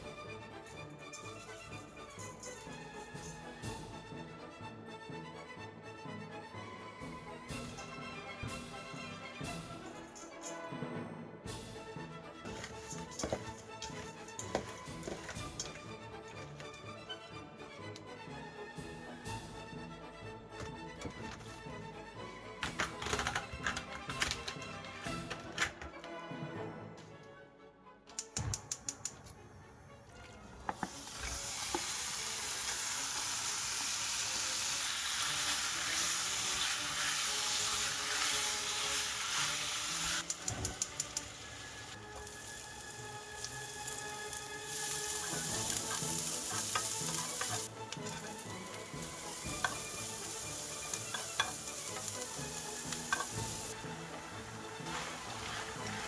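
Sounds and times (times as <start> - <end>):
utensil clicking: 28.1 - 29.4, 40.2 - 41.5
food sizzling in a frying pan: 30.7 - 56.0.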